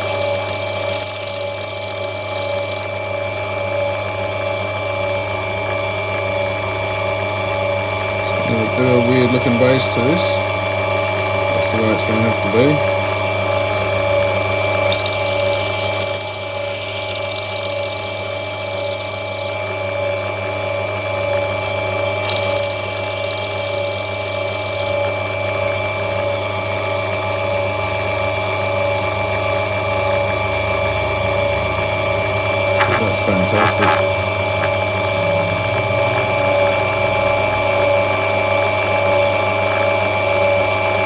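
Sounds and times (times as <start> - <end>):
stone grinding on wheel: 0.0 - 3.0, 14.9 - 19.6, 22.3 - 25.0, 32.8 - 36.8
grinding machine motor hum: 0.0 - 3.3, 14.9 - 19.7, 22.3 - 25.0, 30.4 - 39.3.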